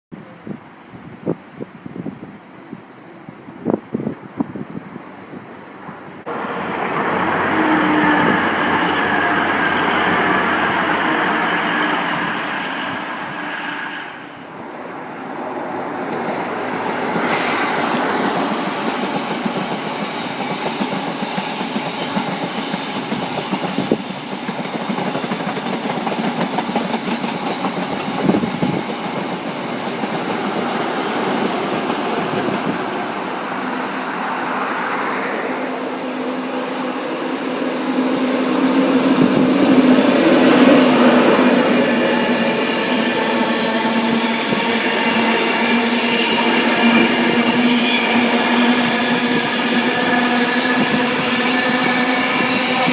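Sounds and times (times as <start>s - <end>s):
train wheels clattering over rails: 18.0s - 32.8s.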